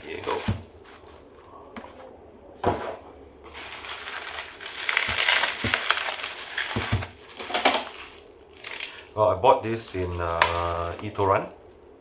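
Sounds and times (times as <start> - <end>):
packaging crinkling and rustling: 0.0 - 2.1, 3.5 - 9.0, 9.7 - 11.5.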